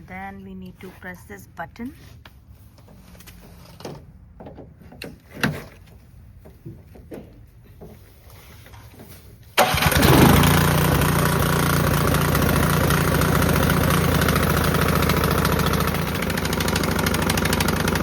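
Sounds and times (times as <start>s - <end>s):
electric starter whirring: 9.6s - 18.0s
snowblower engine running: 9.6s - 18.0s.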